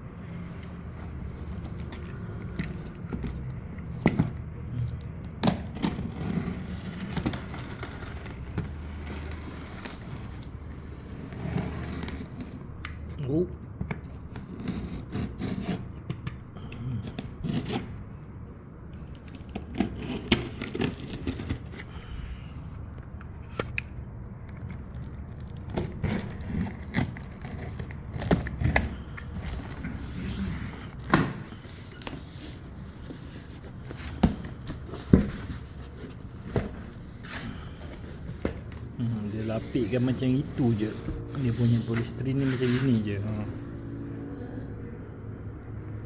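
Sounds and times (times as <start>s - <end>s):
cardboard tearing and scraping: 0.4s - 4.4s, 5.0s - 12.8s, 14.0s - 16.1s, 17.2s - 18.1s, 19.3s - 22.2s, 24.4s - 44.0s
packing tape tearing: 0.6s - 13.1s, 19.1s - 22.1s, 23.3s - 43.0s.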